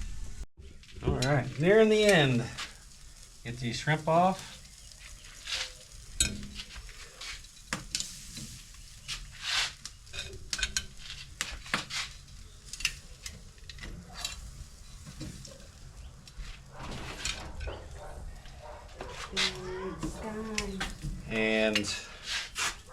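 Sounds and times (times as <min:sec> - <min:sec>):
shrimp sizzling on a grill: 0:00.6 - 0:22.9
metal utensils scraping grate: 0:05.3 - 0:15.7, 0:16.7 - 0:22.9.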